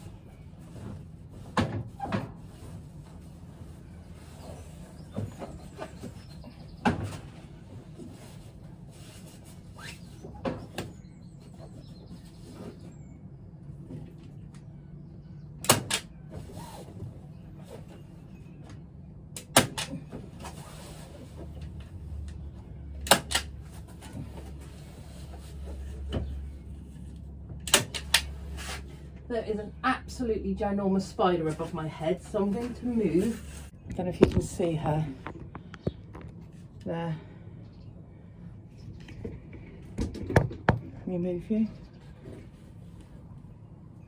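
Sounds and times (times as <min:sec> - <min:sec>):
low steady hum: 0:00.0 - 0:44.0
steady low rumble: 0:21.2 - 0:44.0.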